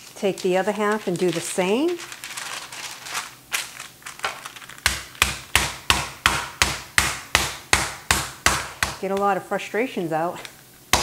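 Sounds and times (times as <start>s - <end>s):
meat being pounded flat: 4.8s - 9.1s.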